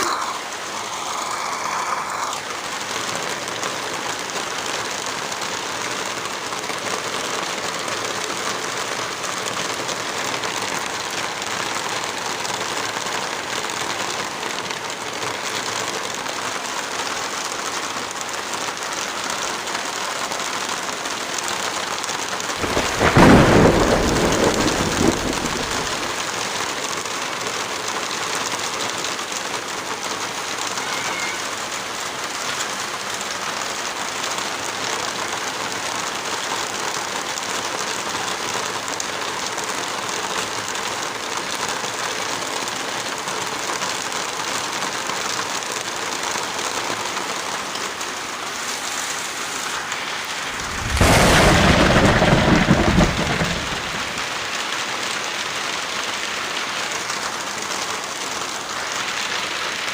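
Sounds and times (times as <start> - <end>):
steady rain falling: 0.0 - 59.9
thunder rumbling: 22.6 - 26.2, 50.4 - 54.5.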